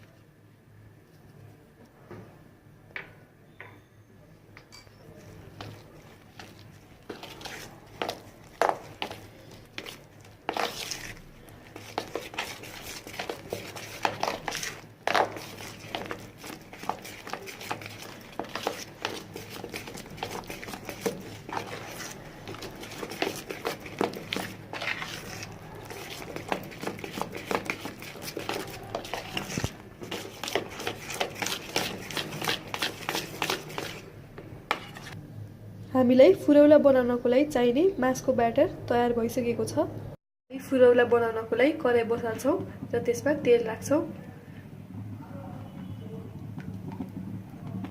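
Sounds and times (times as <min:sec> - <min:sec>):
batter mixing knocks and scrapes: 0:05.2 - 0:35.2, 0:46.5 - 0:47.9.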